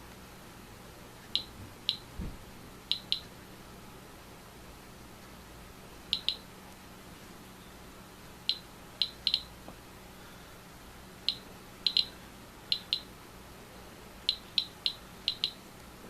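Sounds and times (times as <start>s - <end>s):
geiger counter clicking: 1.4s - 2.0s, 2.9s - 3.3s, 6.1s - 6.4s, 8.5s - 9.5s, 11.2s - 12.1s, 12.7s - 13.1s, 14.2s - 15.6s.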